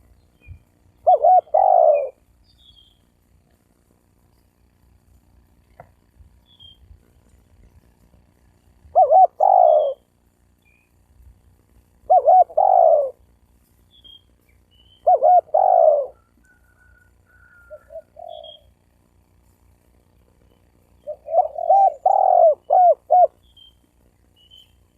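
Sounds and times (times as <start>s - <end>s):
dove cooing: 1.0s - 2.3s, 8.8s - 10.1s, 12.0s - 13.2s, 15.0s - 18.8s, 21.0s - 23.4s.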